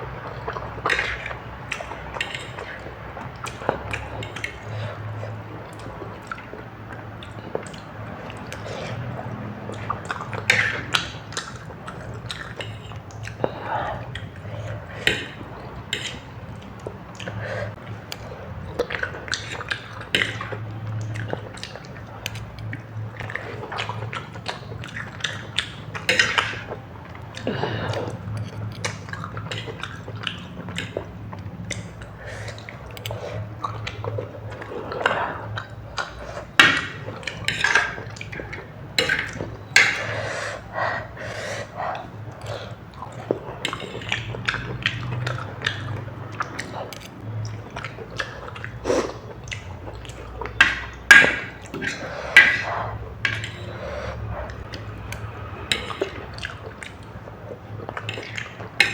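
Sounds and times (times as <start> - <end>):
wet chewing and slurping: 0.0 - 58.9
utensils clicking on a dish: 15.0 - 27.4, 28.2 - 40.6, 49.4 - 58.9.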